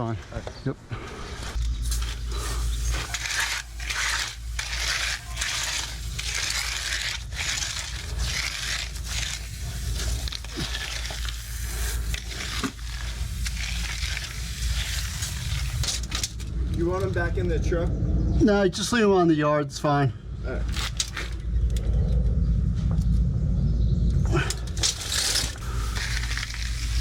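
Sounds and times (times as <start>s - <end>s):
garden hose spraying water: 1.5s - 16.4s, 24.4s - 27.0s
low steady rumble: 1.5s - 27.0s.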